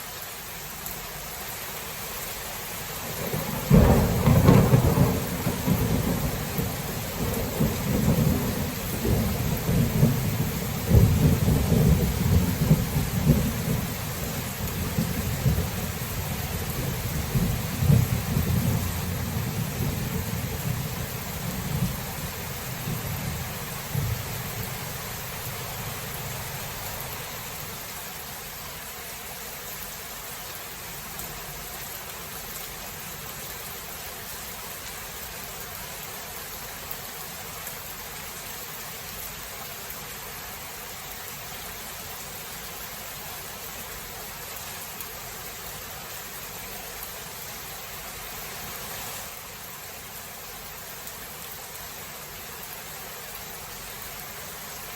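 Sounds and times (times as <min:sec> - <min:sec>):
heavy rain hiss: 0:00.0 - 0:54.9
thunder rumbling: 0:03.2 - 0:27.6.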